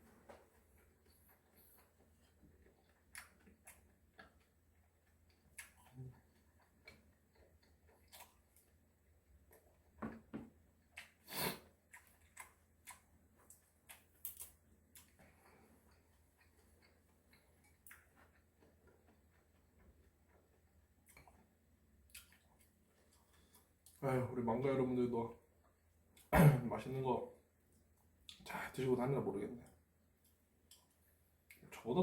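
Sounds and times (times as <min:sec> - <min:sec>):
chewing clicks and smacks: 0:01.0 - 0:08.8, 0:11.9 - 0:24.0, 0:30.2 - 0:31.7.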